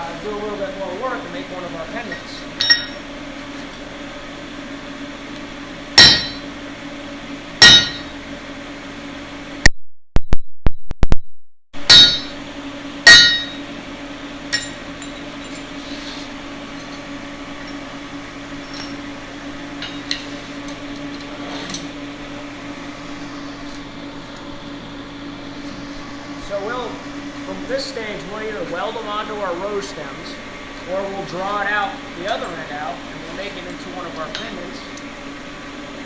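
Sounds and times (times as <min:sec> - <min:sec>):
hammer striking steel on anvil: 0:02.1 - 0:03.0, 0:06.0 - 0:06.5, 0:07.6 - 0:08.2, 0:11.8 - 0:12.4, 0:13.0 - 0:13.7, 0:14.5 - 0:15.1
low hum: 0:04.9 - 0:06.9, 0:07.5 - 0:08.5, 0:09.4 - 0:15.6.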